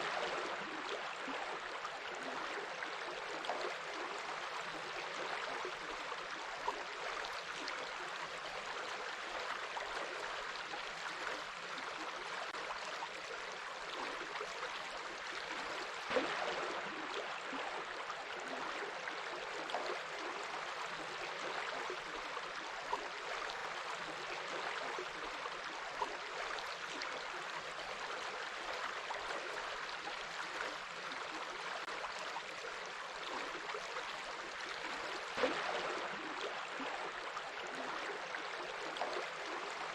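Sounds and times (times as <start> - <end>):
stream water babbling: 0.0 - 39.9
water splashes: 15.6 - 21.9, 30.4 - 39.9.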